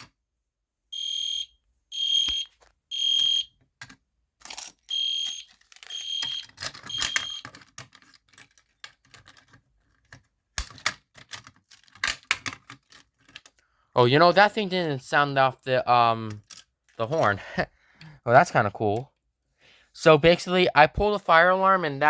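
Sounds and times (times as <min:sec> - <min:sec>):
fire alarm horn blasts: 0:00.9 - 0:03.5, 0:04.9 - 0:07.4
clicks and rattles of alarm hardware: 0:02.3 - 0:13.7, 0:16.2 - 0:17.4.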